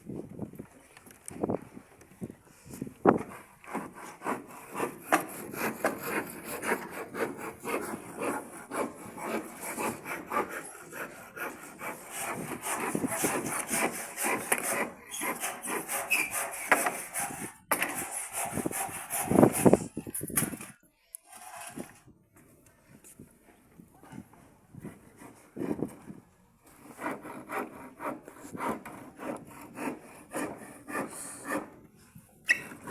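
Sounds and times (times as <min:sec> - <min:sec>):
hand saw cutting wood: 0:03.1 - 0:20.0, 0:21.3 - 0:22.0, 0:26.7 - 0:31.8, 0:32.4 - 0:32.9.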